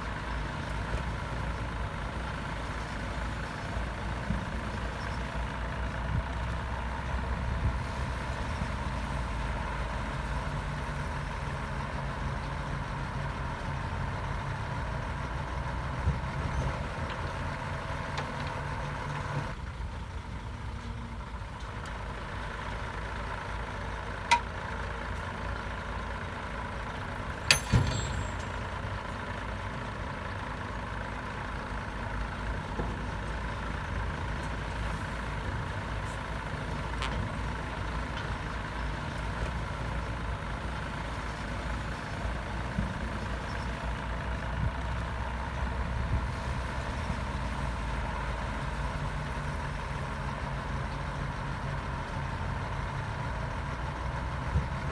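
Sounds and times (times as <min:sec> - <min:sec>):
heavy diesel machinery running: 0:00.0 - 0:54.9.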